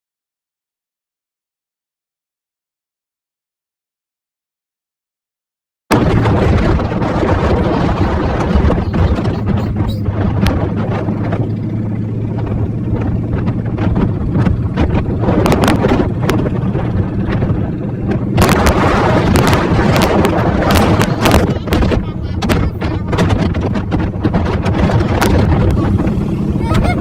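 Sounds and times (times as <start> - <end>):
wind buffeting microphone: 5.9 - 27.0
motorcycle engine running: 6.0 - 27.0.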